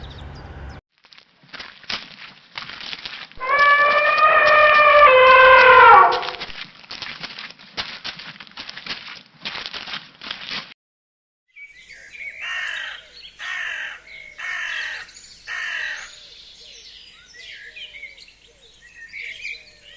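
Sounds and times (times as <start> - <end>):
small birds chirping: 0.0 - 0.8, 11.6 - 19.9
bird giving harsh calls: 12.0 - 19.9.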